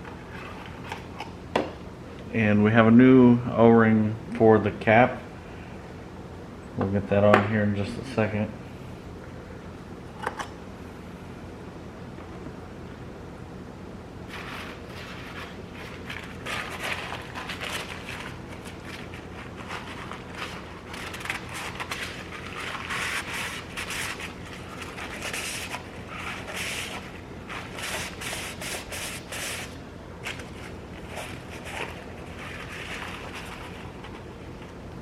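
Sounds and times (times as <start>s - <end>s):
hands scraping and rustling parts: 14.3s - 34.8s.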